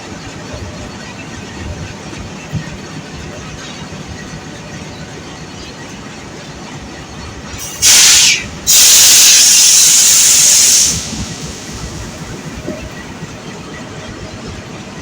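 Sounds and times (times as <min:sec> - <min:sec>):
compressed air hissing: 0:07.6 - 0:12.9.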